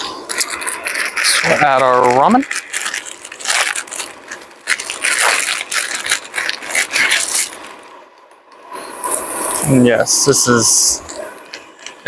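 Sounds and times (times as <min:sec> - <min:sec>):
dry noodles crinkling: 0:00.3 - 0:07.9.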